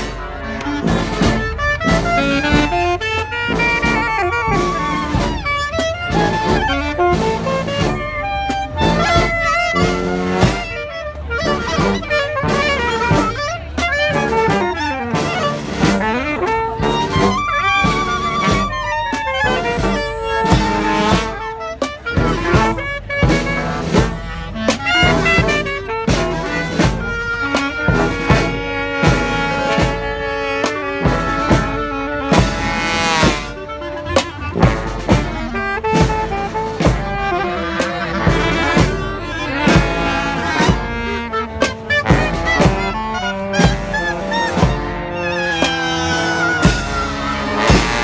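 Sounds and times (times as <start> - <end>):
marching band playing: 0.0 - 48.0.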